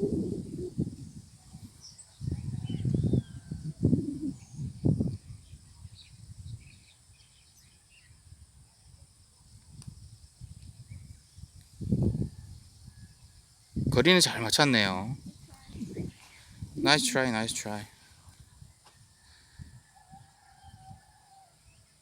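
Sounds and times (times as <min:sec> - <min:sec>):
wind buffeting microphone: 0:00.0 - 0:06.8, 0:09.7 - 0:18.8
faint bird chirps: 0:12.3 - 0:17.8.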